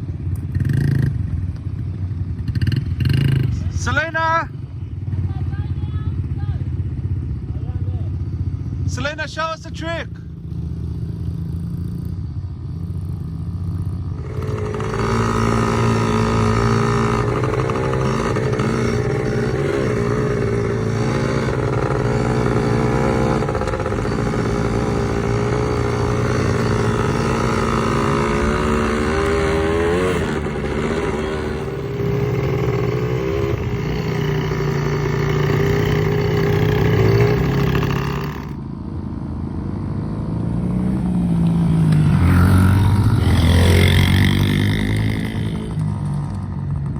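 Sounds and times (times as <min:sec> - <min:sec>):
small engine revving: 0:14.1 - 0:38.6, 0:40.8 - 0:46.5.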